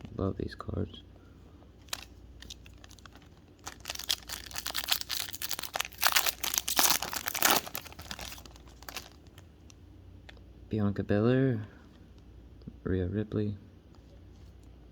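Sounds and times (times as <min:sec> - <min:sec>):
foil wrapper tearing and crinkling: 0:01.8 - 0:09.4.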